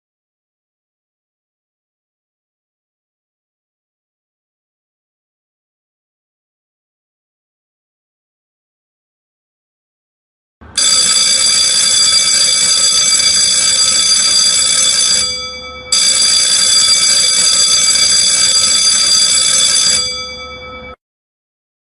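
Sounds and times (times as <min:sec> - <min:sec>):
timer alarm bell ringing: 0:10.8 - 0:21.0.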